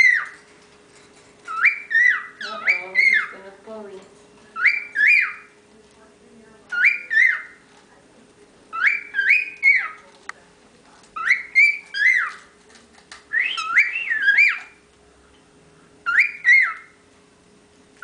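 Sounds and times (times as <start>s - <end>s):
cockatiel whistling: 1.5s - 3.3s, 4.6s - 5.6s, 6.7s - 7.6s, 8.7s - 10.0s, 11.2s - 12.4s, 13.3s - 14.8s, 16.0s - 17.0s.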